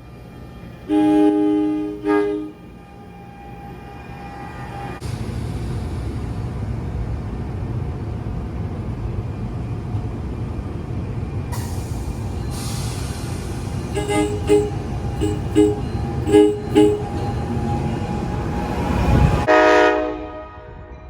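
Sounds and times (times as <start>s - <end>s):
train rumbling: 0.0s - 21.0s
train air horn blasts: 0.9s - 2.7s, 13.9s - 17.3s, 19.2s - 20.9s
air hissing: 11.5s - 17.9s.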